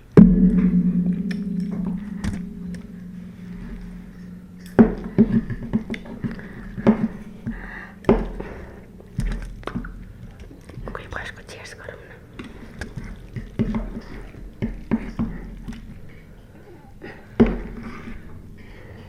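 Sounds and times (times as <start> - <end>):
low ringing tone of struck bowl: 0.0 - 10.8.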